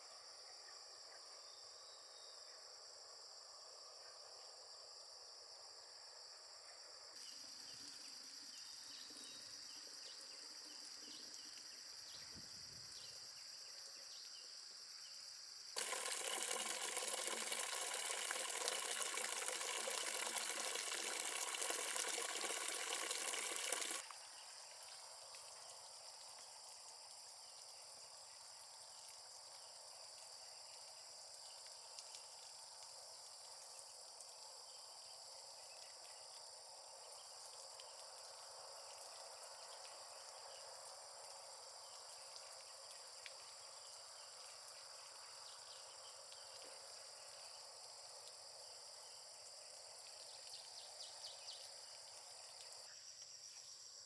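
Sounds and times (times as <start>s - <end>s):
insects droning: 7.2s - 54.0s
running water rushing: 15.8s - 24.1s.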